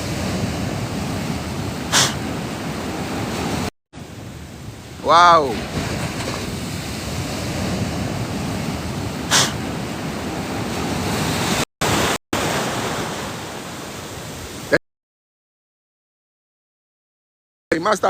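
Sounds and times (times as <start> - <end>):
ocean surf rushing: 0.0 - 14.8
short hiss: 1.9 - 2.2, 9.3 - 9.6.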